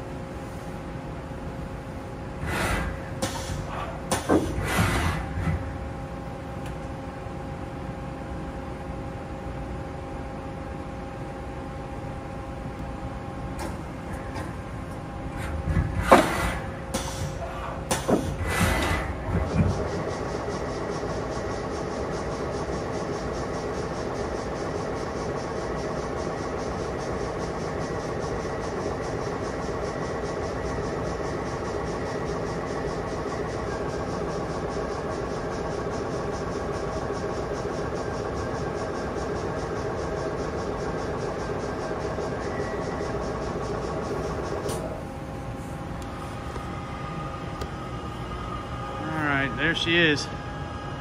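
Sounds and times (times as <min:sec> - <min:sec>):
lathe whining with held tones: 0:18.6 - 0:51.0.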